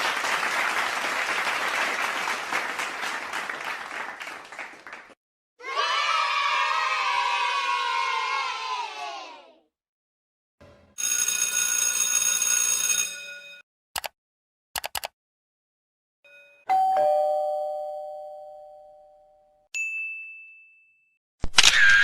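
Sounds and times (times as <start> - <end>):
sharp clicks: 14.0 - 14.2, 14.8 - 15.1
bright bell-like ringing: 16.3 - 21.2
short high ding: 16.3 - 21.2.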